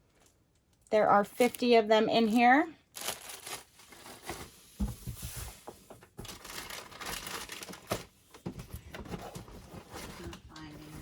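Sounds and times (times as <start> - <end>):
packaging crinkling and rustling: 2.9 - 11.0.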